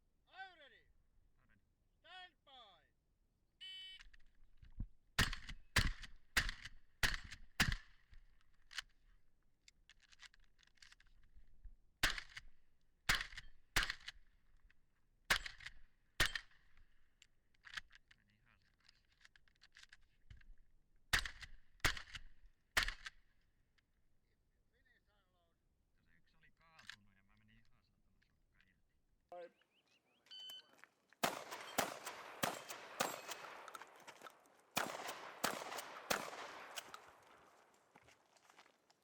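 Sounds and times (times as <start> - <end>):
shotgun action clacking: 5.2 - 8.0, 12.0 - 12.5, 13.1 - 14.2, 15.3 - 16.8, 21.2 - 23.1, 30.3 - 38.7
shells being loaded: 9.6 - 11.3, 12.0 - 14.7, 15.3 - 20.6, 21.2 - 23.2, 26.8 - 27.0, 30.3 - 39.0
shotgun shots: 30.5 - 38.4.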